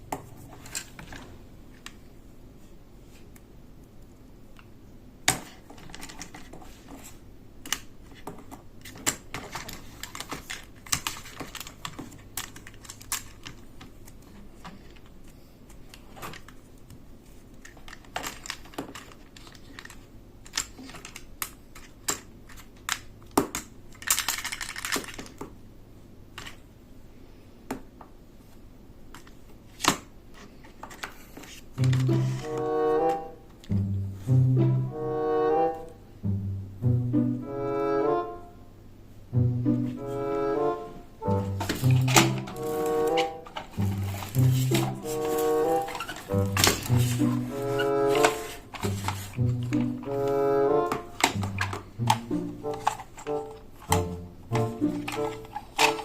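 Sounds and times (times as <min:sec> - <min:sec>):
packaging rustle: 0:42.0 - 0:49.4.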